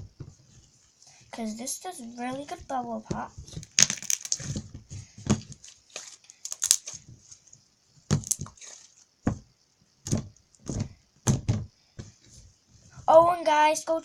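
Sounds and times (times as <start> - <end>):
slime being squeezed by hand: 3.6 - 4.6, 5.9 - 7.0.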